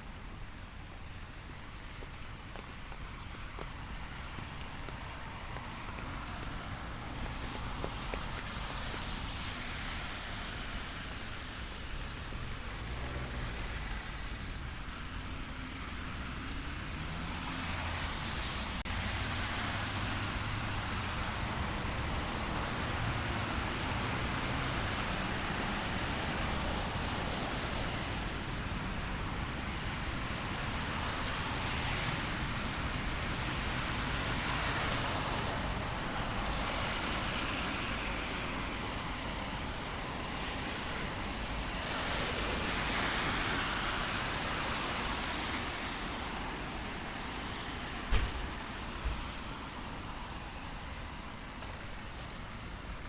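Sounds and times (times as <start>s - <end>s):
car tyres hissing on wet road: 0.0s - 53.0s
low traffic rumble: 0.0s - 53.0s
steady rain: 0.0s - 53.0s.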